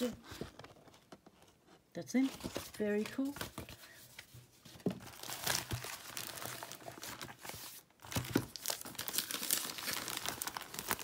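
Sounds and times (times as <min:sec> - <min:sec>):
packaging crinkling: 0:05.0 - 0:11.0.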